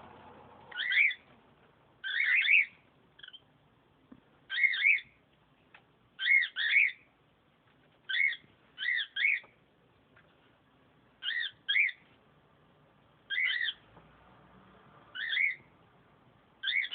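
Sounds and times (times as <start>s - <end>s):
lovebird chirping: 0.7s - 1.3s, 2.0s - 3.6s, 4.5s - 5.2s, 6.2s - 7.1s, 8.1s - 9.6s, 11.2s - 12.1s, 13.2s - 13.9s, 15.1s - 15.8s, 16.6s - 16.9s.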